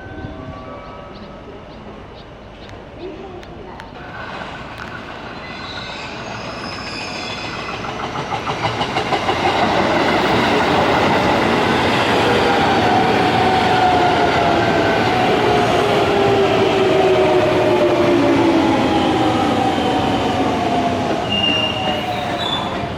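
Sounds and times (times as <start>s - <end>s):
train wheels clacking over rail joints: 7.5s - 11.8s.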